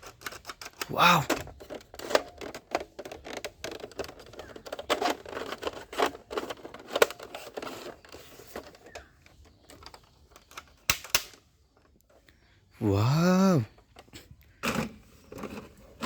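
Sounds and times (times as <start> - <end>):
plastic toy guns clicking and knocking: 0.0 - 11.4.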